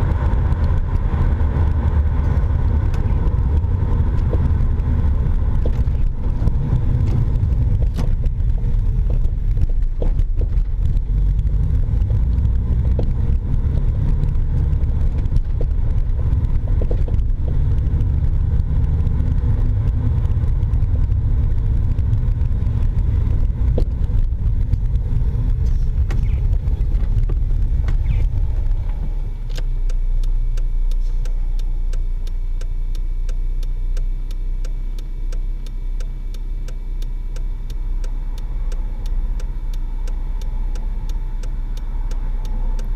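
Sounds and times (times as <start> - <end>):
road and tyre rumble: 0.0 - 42.9
suspension clunks: 0.0 - 42.9
regular ticking: 19.3 - 42.9.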